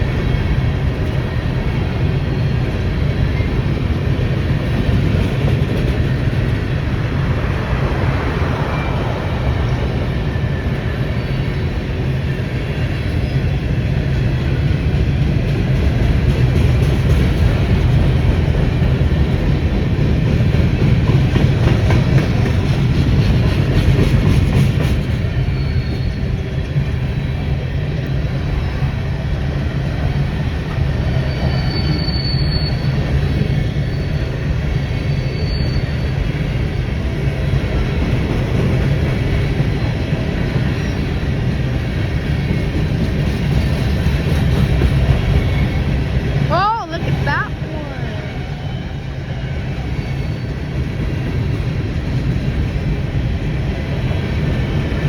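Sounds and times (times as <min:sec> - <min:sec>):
freight train wheels rumbling: 0:00.0 - 0:55.0
high wheel squeals: 0:07.1 - 0:12.4, 0:25.2 - 0:26.7, 0:30.8 - 0:36.7, 0:48.1 - 0:51.0.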